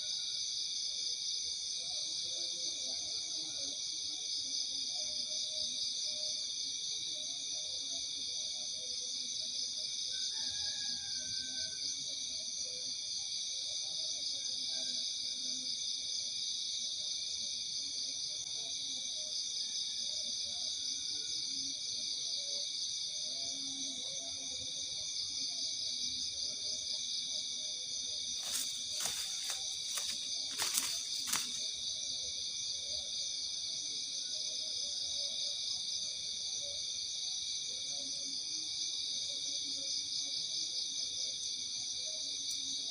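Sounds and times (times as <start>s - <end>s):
insects trilling: 18.4s - 42.9s.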